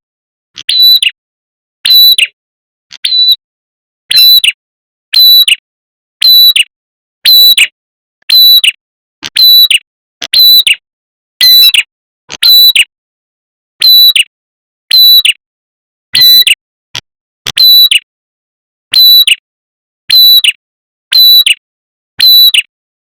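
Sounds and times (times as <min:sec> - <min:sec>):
high bird call notes: 0:00.7 - 0:01.2.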